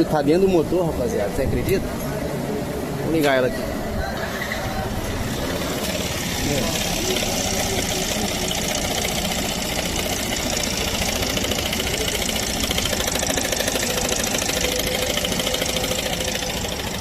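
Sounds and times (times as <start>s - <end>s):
scooter engine idling: 4.2s - 17.0s
fast knocking inside engine: 6.2s - 17.0s.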